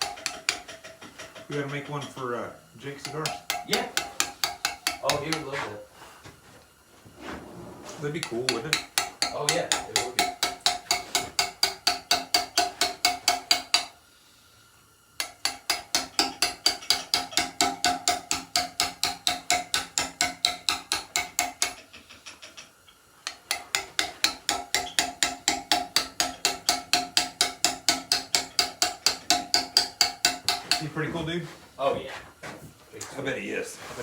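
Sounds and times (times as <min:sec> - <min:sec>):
hammer striking chisel into stone: 0:00.0 - 0:02.2, 0:03.0 - 0:05.6, 0:08.2 - 0:13.9, 0:15.2 - 0:21.9, 0:23.3 - 0:31.0.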